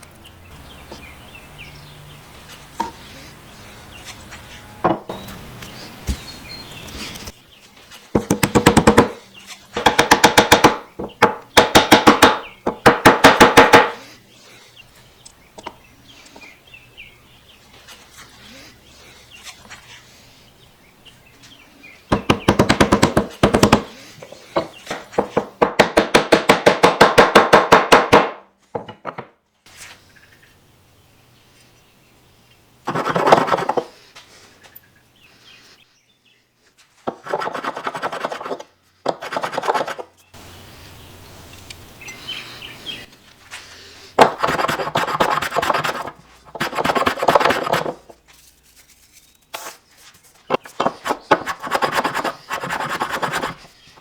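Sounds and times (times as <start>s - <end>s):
hand tool scraping wood: 32.9s - 34.0s, 37.0s - 40.1s, 43.7s - 48.2s, 48.8s - 54.0s.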